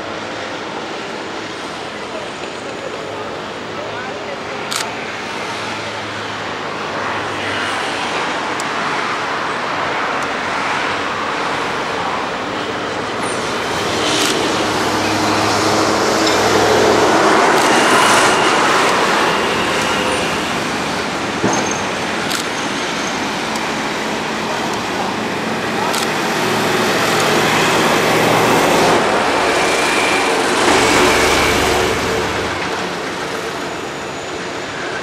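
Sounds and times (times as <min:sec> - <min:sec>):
train rumbling past: 0:08.2 - 0:35.0.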